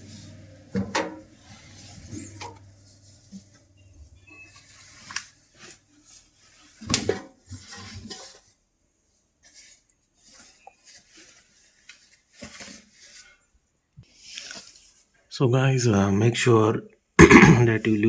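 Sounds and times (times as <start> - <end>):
fabric rustling: 1.5 - 15.3.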